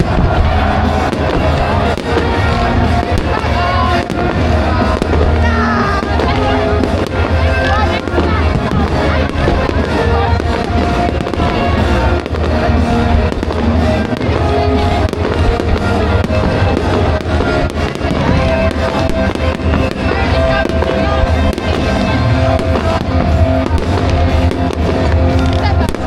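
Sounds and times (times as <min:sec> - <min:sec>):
fireworks bangs and crackles: 0:00.0 - 0:26.0
loud music: 0:00.0 - 0:26.0.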